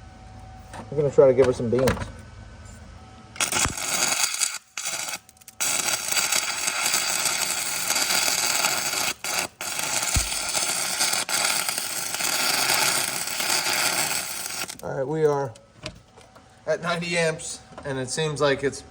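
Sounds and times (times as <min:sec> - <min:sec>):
welding arc crackling hiss: 0:03.4 - 0:14.9.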